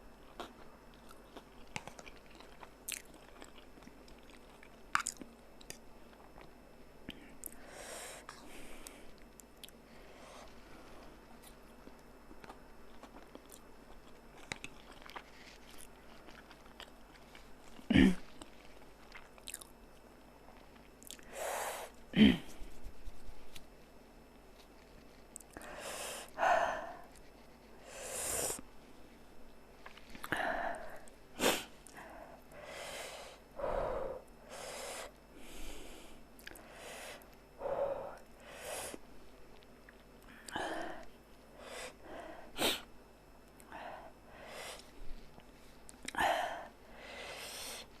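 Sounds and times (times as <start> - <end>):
person chewing noodles: 0.2 - 6.6, 11.4 - 19.8, 20.5 - 21.3, 36.4 - 36.6
woman breathing heavily and gasping: 46.1 - 47.9.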